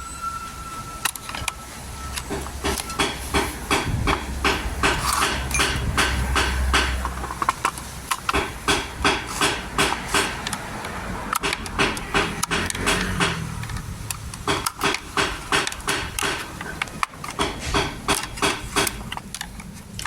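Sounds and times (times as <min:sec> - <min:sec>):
hammer blows: 0:01.5 - 0:07.2, 0:08.3 - 0:10.5, 0:11.4 - 0:13.6, 0:14.4 - 0:16.8, 0:17.4 - 0:19.0.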